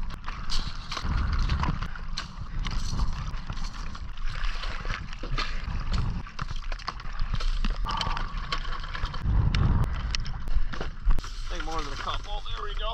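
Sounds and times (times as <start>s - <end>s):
small underwater clicks and knocks: 0.0s - 12.9s
underwater current and bubbles rumble: 0.0s - 12.9s
low underwater surge: 7.8s - 11.5s.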